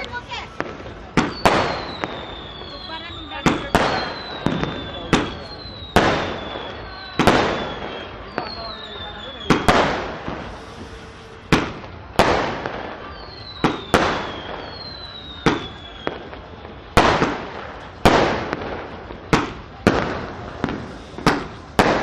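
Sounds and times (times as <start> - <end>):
firework whistles falling in pitch: 0.0 - 11.9, 12.6 - 18.6
fireworks bangs crackling: 0.0 - 22.0.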